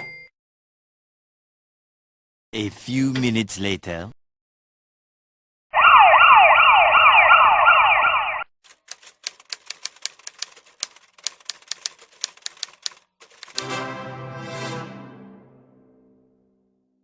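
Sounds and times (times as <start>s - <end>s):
siren wailing in falling sweeps: 5.7s - 8.5s
typewriter key clacks: 8.7s - 13.7s.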